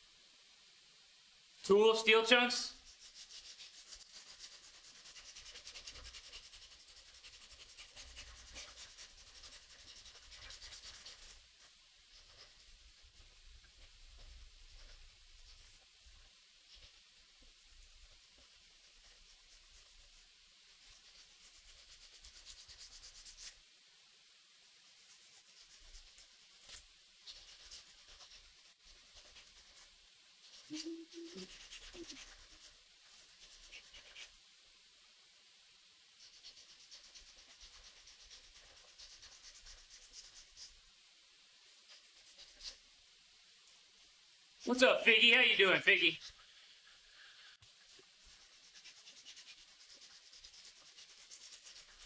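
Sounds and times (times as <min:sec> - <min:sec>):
hand sanding scratchy strokes: 0:02.8 - 0:23.6, 0:24.6 - 0:34.4, 0:36.2 - 0:40.8, 0:47.8 - 0:52.0.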